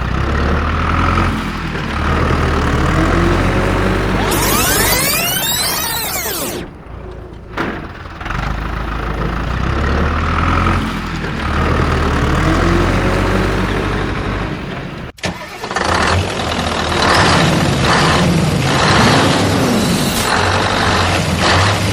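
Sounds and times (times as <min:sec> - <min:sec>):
louder noisier engine: 0:00.0 - 0:15.1
vehicle engine starting and idling: 0:00.0 - 0:21.9.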